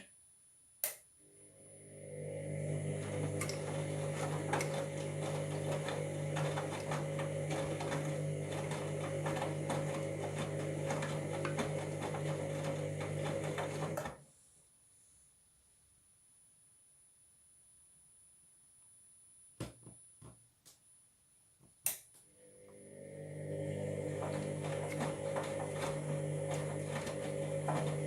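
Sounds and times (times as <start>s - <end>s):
washing machine motor hum: 1.3s - 14.2s, 22.4s - 28.0s.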